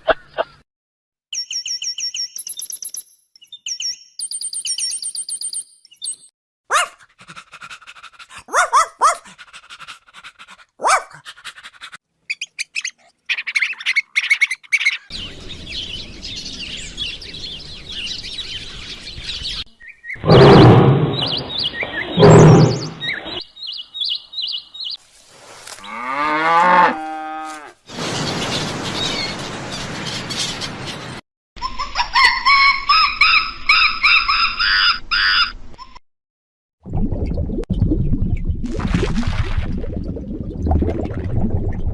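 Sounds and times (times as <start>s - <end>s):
bird chirps: 1.3s - 6.3s, 12.3s - 25.0s
loud deep animal calls: 20.2s - 23.4s.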